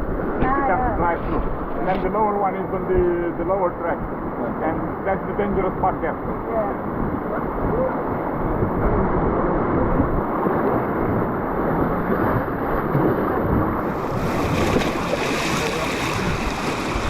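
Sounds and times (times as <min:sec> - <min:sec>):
wind on microphone: 0:03.9 - 0:17.0
river water rushing: 0:13.8 - 0:17.0.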